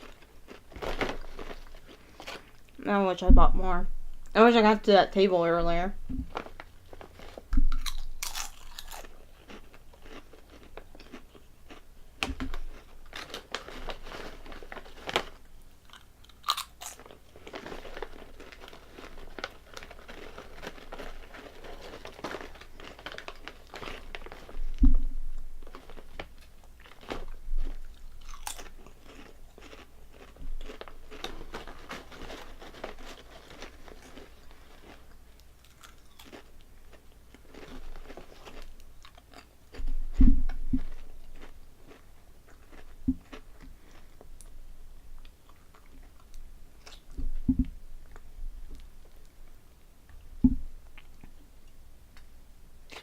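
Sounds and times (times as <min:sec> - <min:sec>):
crunching potato chips: 0:00.0 - 0:02.9, 0:06.2 - 0:44.5
heavy thump: 0:03.3 - 0:04.1, 0:24.8 - 0:25.3, 0:40.1 - 0:40.9.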